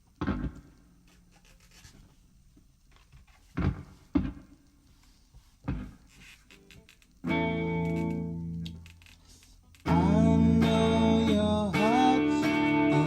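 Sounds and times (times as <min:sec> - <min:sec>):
faint scraping and rubbing: 0:01.0 - 0:02.3, 0:04.9 - 0:07.2.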